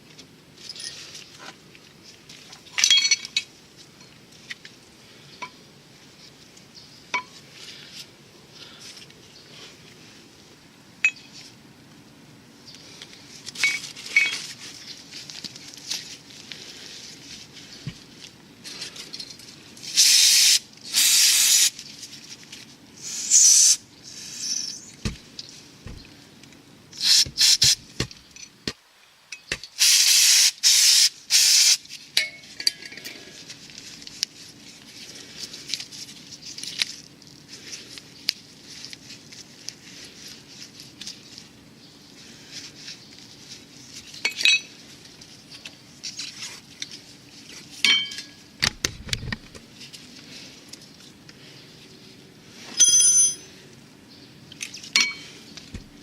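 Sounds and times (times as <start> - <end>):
metal parts clinking: 0.6 - 1.1, 2.7 - 3.5, 44.3 - 44.7
aerosol spray hissing: 20.0 - 21.7, 27.0 - 27.8, 29.8 - 31.8.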